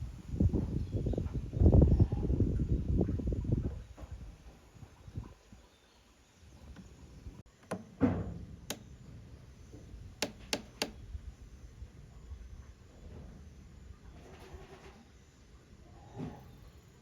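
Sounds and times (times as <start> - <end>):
low wind rumble: 0.0 - 5.7
sharp knocks and clicks: 7.6 - 8.9, 9.7 - 11.0.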